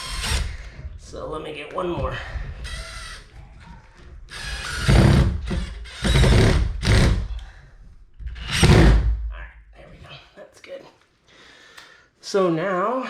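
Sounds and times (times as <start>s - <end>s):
drill-driver driving screw into wood: 0.0s - 0.8s, 2.6s - 3.3s, 4.3s - 7.4s, 8.4s - 9.1s.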